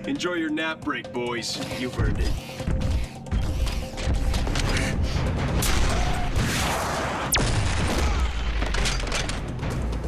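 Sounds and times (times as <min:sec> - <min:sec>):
cartoon action music: 0:04.2 - 0:08.6.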